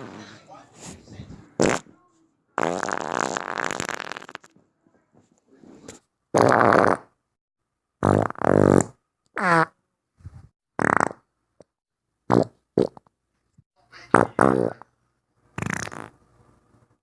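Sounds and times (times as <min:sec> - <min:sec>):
farts: 0:01.6 - 0:01.9, 0:02.6 - 0:04.5, 0:06.4 - 0:07.2, 0:08.0 - 0:09.8, 0:10.8 - 0:11.3, 0:12.3 - 0:13.1, 0:14.1 - 0:14.9, 0:15.6 - 0:16.2.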